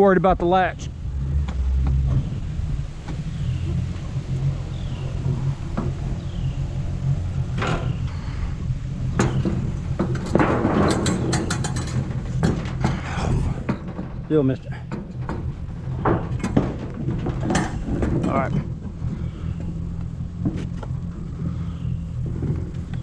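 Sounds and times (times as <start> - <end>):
boat motor idling: 0.0 - 23.0
clicking and rustling hiss: 1.5 - 23.0
sharp knocks: 3.0 - 19.7.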